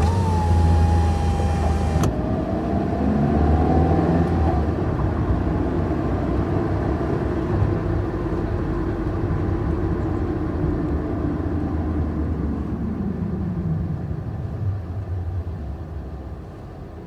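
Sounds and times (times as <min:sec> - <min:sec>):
car engine drone: 0:00.0 - 0:17.0
road noise: 0:00.0 - 0:17.0.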